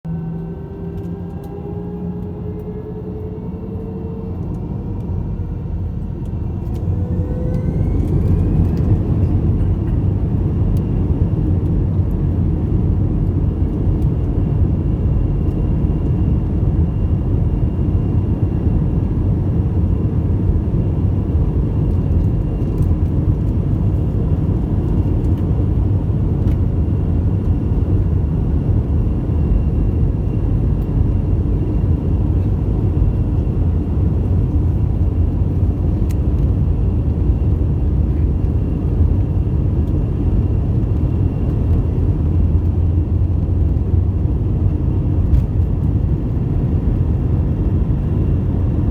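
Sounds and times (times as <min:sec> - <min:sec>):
jet engines spooling up: 0:00.2 - 0:10.0.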